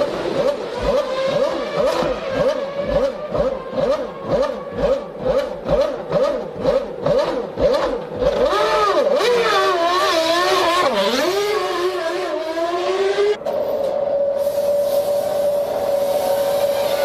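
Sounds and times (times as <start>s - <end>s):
race car engine revving: 0.0s - 13.4s
race car engines passing: 0.0s - 14.4s.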